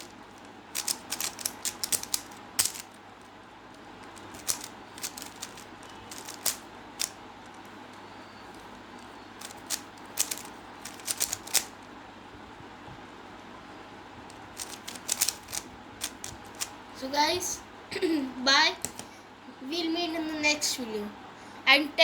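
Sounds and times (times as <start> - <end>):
puzzle cube layers clicking: 0.0 - 2.9, 4.0 - 7.7, 9.4 - 11.8, 14.3 - 16.7.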